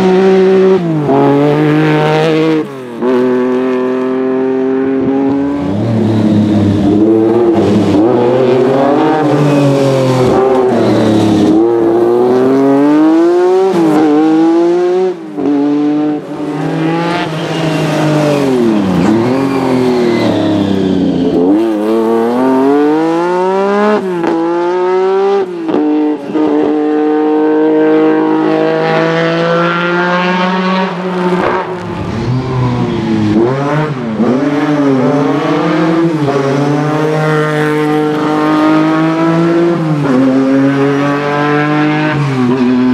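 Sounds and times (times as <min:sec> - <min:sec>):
rally car engine revving: 0:00.0 - 0:42.9.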